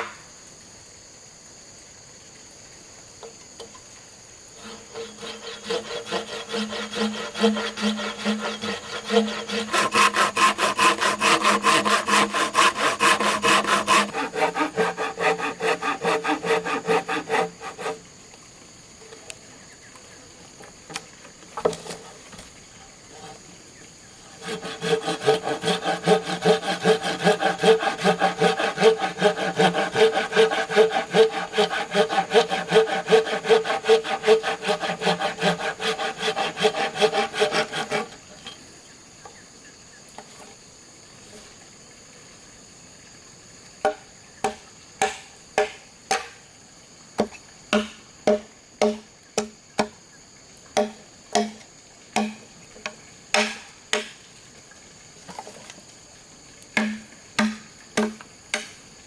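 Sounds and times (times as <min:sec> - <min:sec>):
hand saw cutting bamboo: 0:04.6 - 0:18.1, 0:23.1 - 0:23.5, 0:24.2 - 0:38.2.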